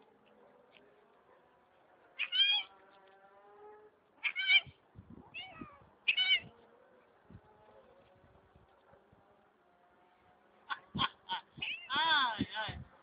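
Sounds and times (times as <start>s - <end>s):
cat meowing: 2.2s - 2.7s, 4.2s - 6.5s.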